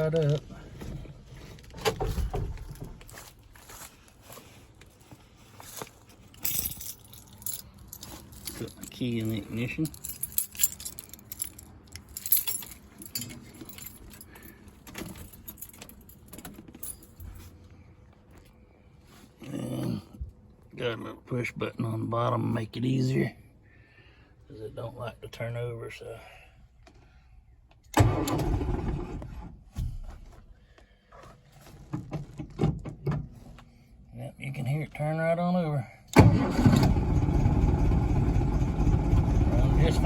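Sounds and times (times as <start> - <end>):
keys jangling on key ring: 6.3 - 17.5
starter motor cranking: 28.0 - 29.5
car engine running: 36.8 - 40.0.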